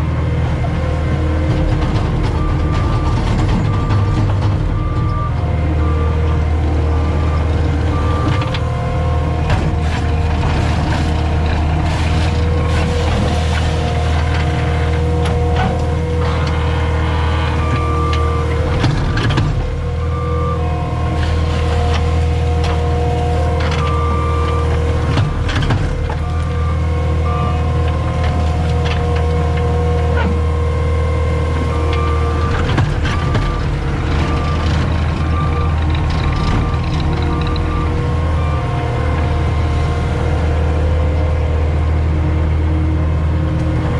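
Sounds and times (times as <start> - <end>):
diesel engine running under load: 0.0 - 43.9
beeping: 26.2 - 29.2, 31.7 - 39.6.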